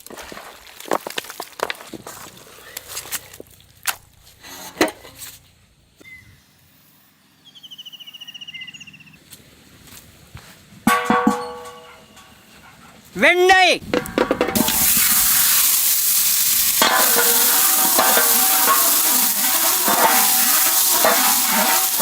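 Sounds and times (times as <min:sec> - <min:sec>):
bird chirps: 0:06.0 - 0:06.7, 0:07.3 - 0:09.2
bird trilling: 0:07.4 - 0:09.2
sharp clicks and knocks: 0:13.8 - 0:15.2.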